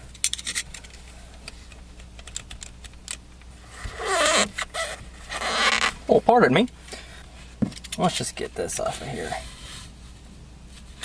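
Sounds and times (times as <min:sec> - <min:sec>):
tools clicking and rattling: 0:00.1 - 0:03.2
rustling scrape: 0:09.0 - 0:11.0.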